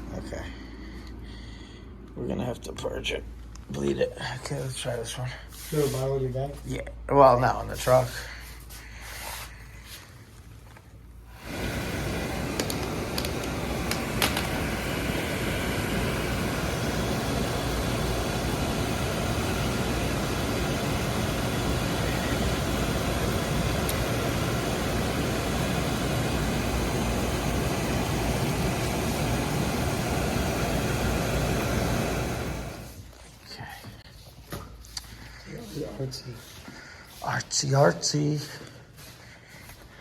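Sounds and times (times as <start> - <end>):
burner clicks: 11.3 - 33.0
oil burner rushing: 11.3 - 33.1.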